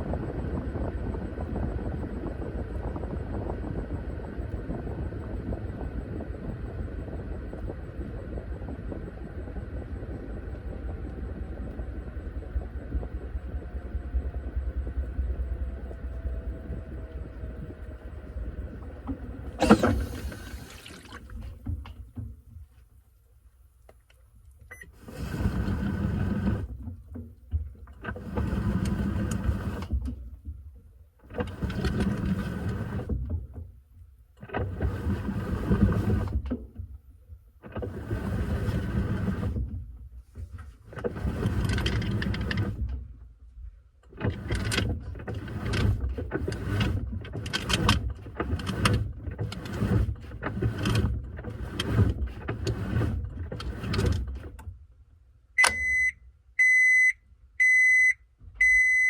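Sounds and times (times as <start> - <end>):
washing machine churning water: 18.6 - 22.2, 25.0 - 30.0, 31.3 - 33.3.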